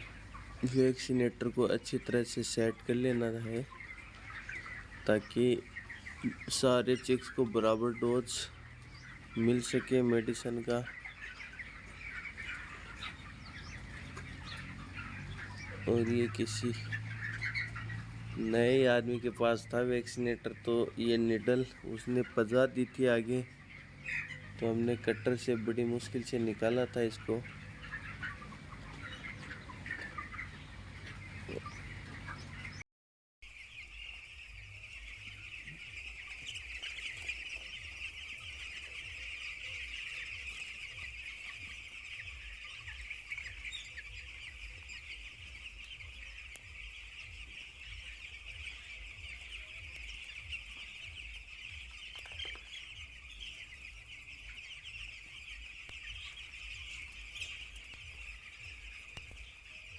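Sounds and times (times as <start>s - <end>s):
chicks peeping: 0.0s - 32.8s, 33.4s - 59.9s.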